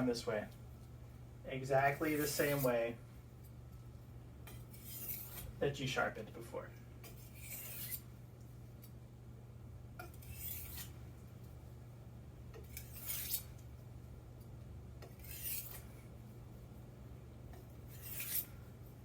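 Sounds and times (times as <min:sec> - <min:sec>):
low steady hum: 0:00.0 - 0:19.0
knife scraping on sharpening surface: 0:02.1 - 0:02.8, 0:04.5 - 0:05.6, 0:07.0 - 0:08.1, 0:10.0 - 0:11.0, 0:12.6 - 0:13.6, 0:15.0 - 0:16.0, 0:17.9 - 0:18.6.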